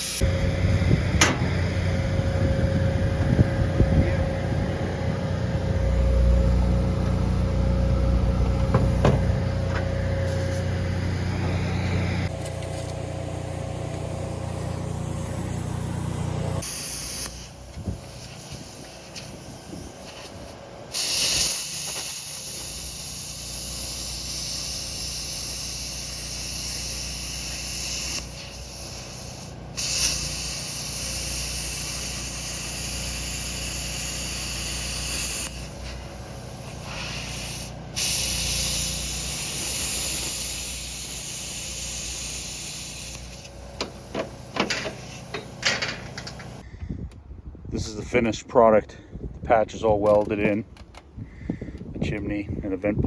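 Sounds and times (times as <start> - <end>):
welding arc hissing and crackling: 0.0 - 0.4, 13.9 - 46.6
steady low hum: 0.0 - 46.8.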